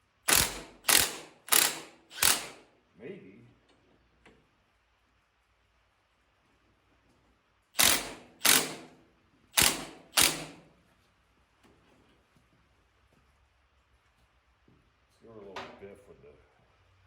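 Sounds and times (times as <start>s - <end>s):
impact wrench bursts: 0.2s - 2.7s, 7.8s - 9.0s, 9.6s - 10.7s.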